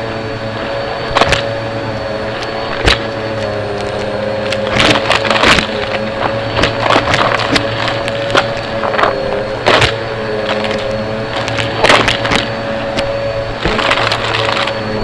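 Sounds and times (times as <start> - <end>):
vacuum cleaner motor: 0.0 - 15.0
debris crackling through hose: 2.3 - 15.0.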